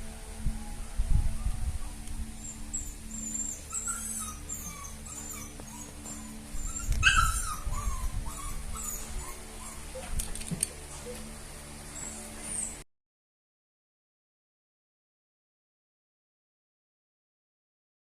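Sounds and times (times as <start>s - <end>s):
puppies whimpering and squeaking: 2.3s - 12.8s
puppy yelp: 2.4s - 10.2s, 11.9s - 12.8s.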